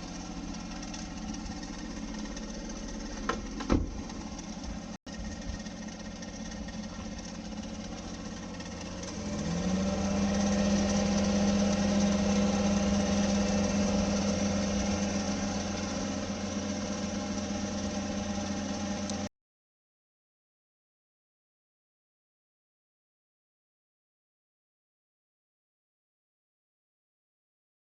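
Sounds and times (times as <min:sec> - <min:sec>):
car engine running: 0:00.0 - 0:19.3
steady rasping engine tone: 0:00.0 - 0:19.3.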